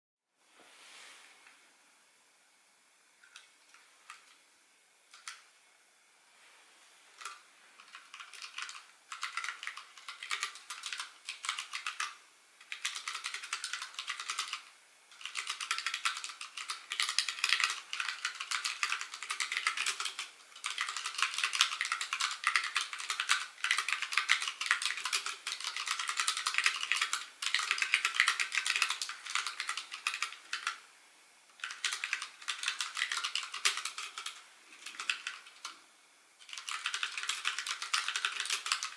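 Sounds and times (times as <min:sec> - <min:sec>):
fast typing on keyboard: 0:07.2 - 0:30.8, 0:31.6 - 0:35.8, 0:36.4 - 0:38.9.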